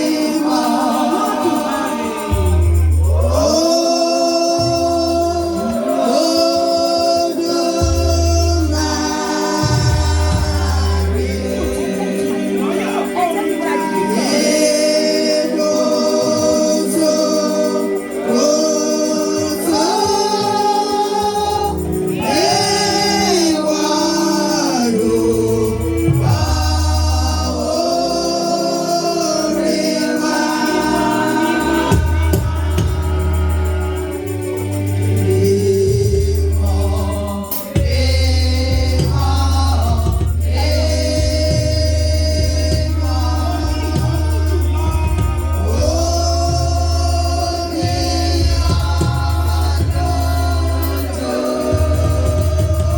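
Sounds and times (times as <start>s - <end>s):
gospel choir singing: 0.0s - 52.9s
deep bass line: 2.0s - 5.8s, 7.8s - 12.6s, 25.0s - 28.4s, 30.6s - 52.9s.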